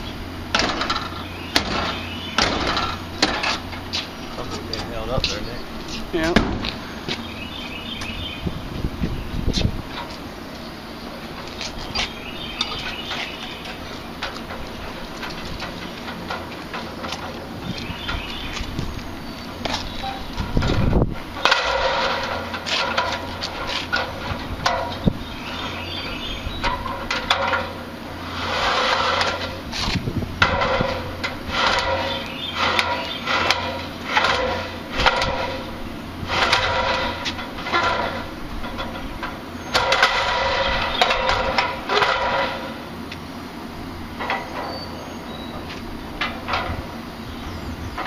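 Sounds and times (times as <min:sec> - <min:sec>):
ladder clanks and knocks: 0:00.5 - 0:03.8, 0:12.6 - 0:18.5, 0:19.6 - 0:25.2, 0:26.6 - 0:27.8, 0:28.5 - 0:35.7, 0:36.3 - 0:42.8, 0:46.2 - 0:46.8
ladder sections sliding and scraping: 0:00.5 - 0:08.3, 0:11.2 - 0:43.0, 0:44.2 - 0:47.0.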